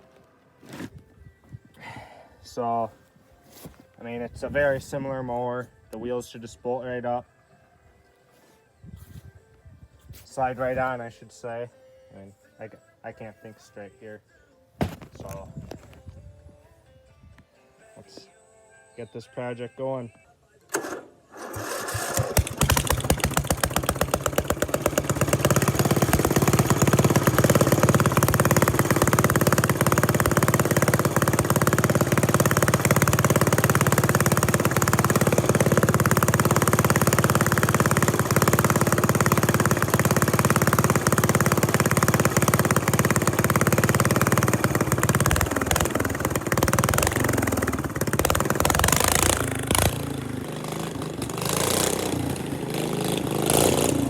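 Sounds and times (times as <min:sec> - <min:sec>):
lawn tractor engine running: 0:20.7 - 0:54.0.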